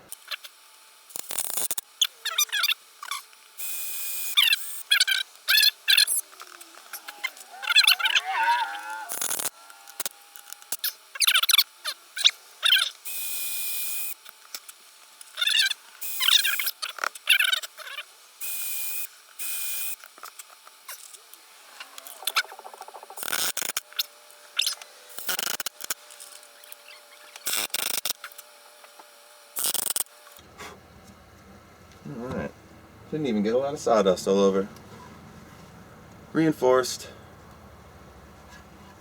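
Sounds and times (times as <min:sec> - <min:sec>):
high wavering squeaks: 0:04.4 - 0:11.5
power drill driving screws: 0:08.8 - 0:11.6, 0:23.2 - 0:30.4.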